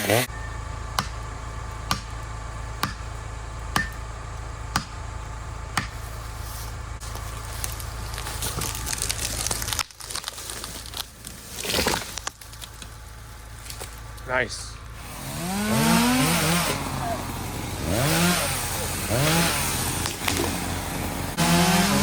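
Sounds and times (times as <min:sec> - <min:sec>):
branches crackling and tearing: 0:05.9 - 0:14.3, 0:15.4 - 0:22.0
falling tree crash: 0:07.0 - 0:14.2, 0:15.6 - 0:22.0.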